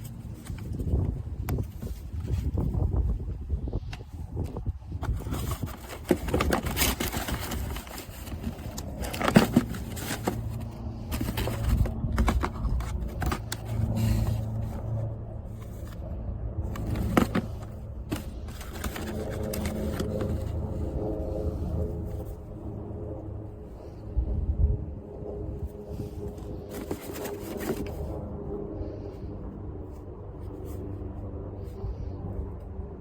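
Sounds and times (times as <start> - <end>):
wood scraping and cracking: 5.0 - 15.0, 16.7 - 21.5.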